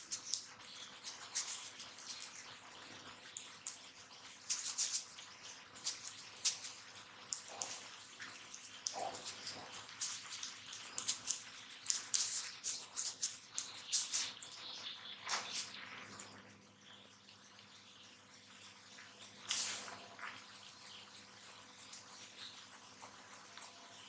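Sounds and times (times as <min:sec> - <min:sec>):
hands crackling and scratching on head: 0:03.6 - 0:14.5, 0:19.4 - 0:24.0.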